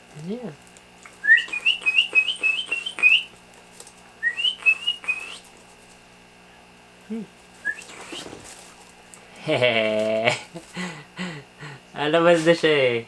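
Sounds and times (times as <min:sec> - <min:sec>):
baby sparrow chirping: 0:01.2 - 0:03.3, 0:04.2 - 0:05.4, 0:07.7 - 0:08.2.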